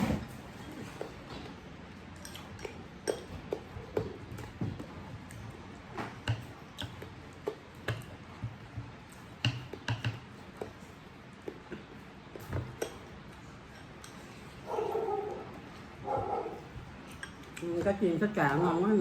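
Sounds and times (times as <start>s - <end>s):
utensils clicking against dishes: 2.1s - 3.7s, 11.7s - 14.4s, 17.0s - 19.0s.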